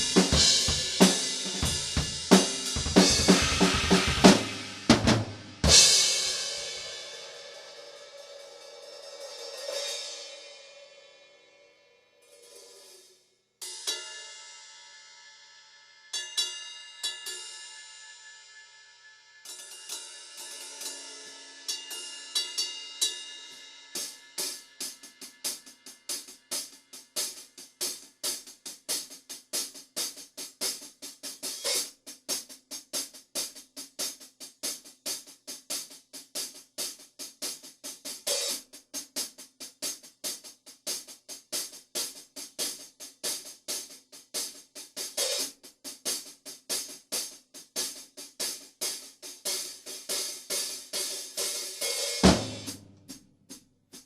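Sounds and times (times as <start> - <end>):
drum groove cymbal and snare: 0.0 - 10.7, 13.6 - 15.1, 19.5 - 54.0.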